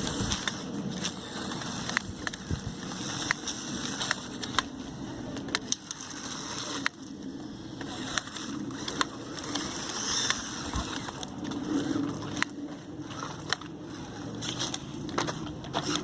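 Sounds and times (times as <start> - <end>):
plastic parts clicking: 0.0 - 7.1, 7.8 - 16.0
toy truck motor hum: 0.0 - 16.0.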